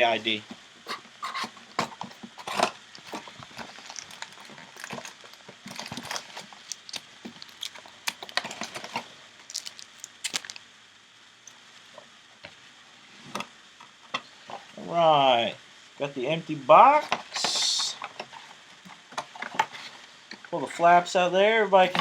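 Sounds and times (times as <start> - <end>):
card packs crinkling: 0.9 - 10.6.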